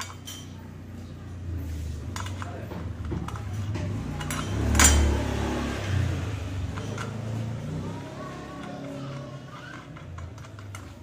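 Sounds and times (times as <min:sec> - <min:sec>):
small metal parts clicking: 0:00.0 - 0:00.5, 0:02.1 - 0:05.1, 0:06.6 - 0:11.0.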